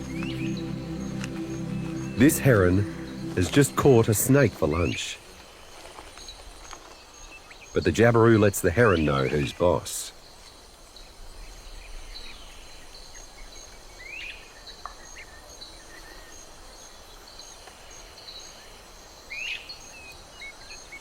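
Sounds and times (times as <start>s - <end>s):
pulsing insect call: 0.0s - 5.2s
rising bird chirps: 0.0s - 5.3s.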